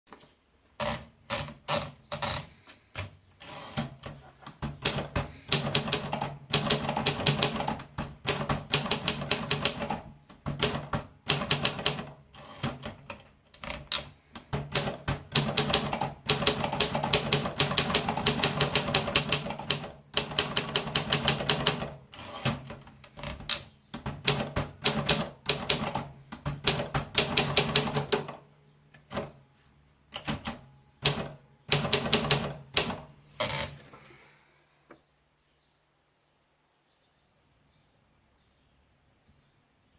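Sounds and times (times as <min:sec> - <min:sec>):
typewriter keystroke clacks: 0:00.8 - 0:28.4, 0:30.1 - 0:33.1.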